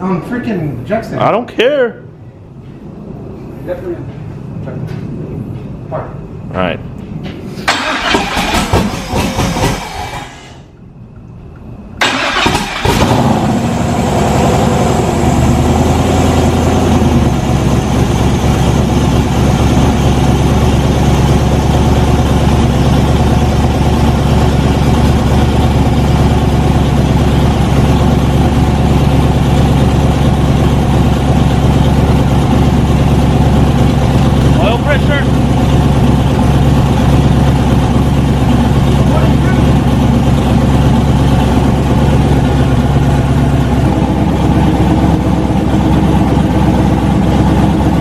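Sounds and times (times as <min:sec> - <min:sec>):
engine cranking: 0:07.7 - 0:10.6, 0:12.0 - 0:13.3
engine revving and idling: 0:07.7 - 0:10.6, 0:12.0 - 0:48.0.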